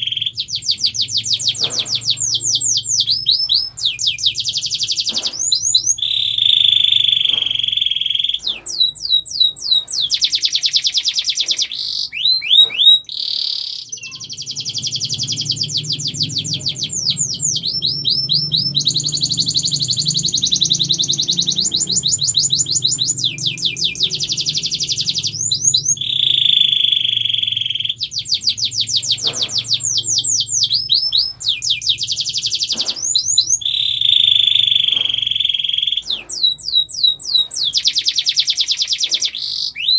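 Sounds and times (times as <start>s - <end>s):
canary singing trills: 0.0s - 39.9s
low hum: 14.2s - 32.9s.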